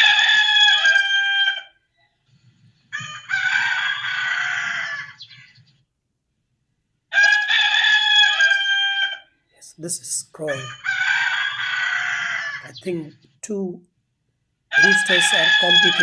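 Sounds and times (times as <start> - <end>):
roosters crowing: 3.0 - 5.2.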